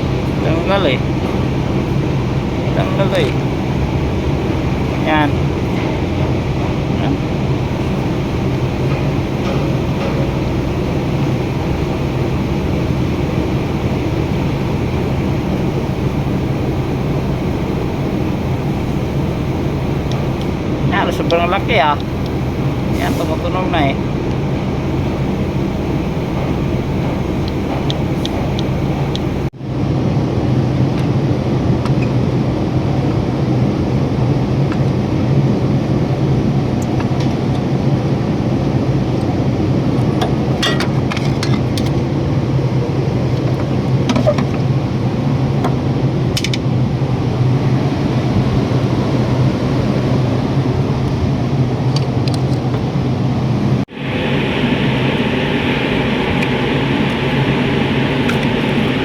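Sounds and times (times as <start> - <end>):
mechanical drone: 0.0 - 31.9, 46.3 - 59.0.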